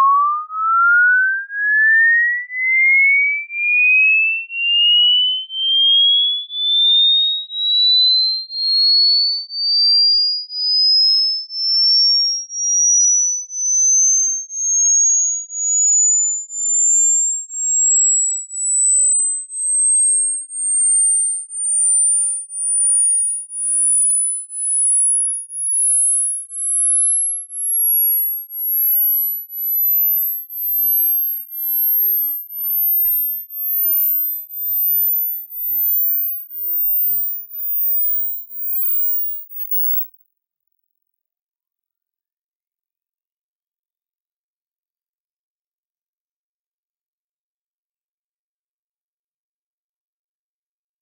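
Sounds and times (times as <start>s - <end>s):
rising pure tone beeps: 0.0s - 2.2s, 19.7s - 40.1s.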